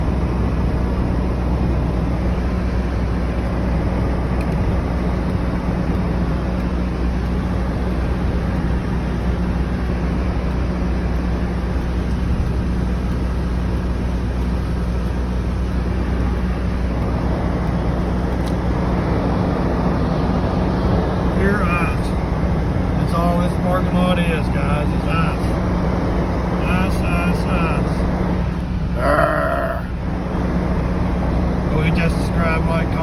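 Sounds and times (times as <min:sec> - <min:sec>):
steady rushing noise: 0:07.0 - 0:33.0.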